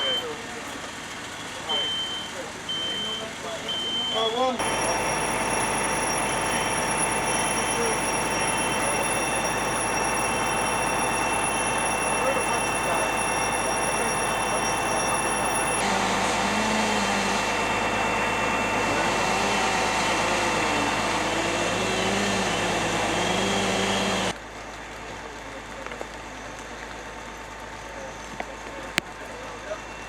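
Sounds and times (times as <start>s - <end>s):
machinery rushing and rumbling: 4.6s - 24.3s.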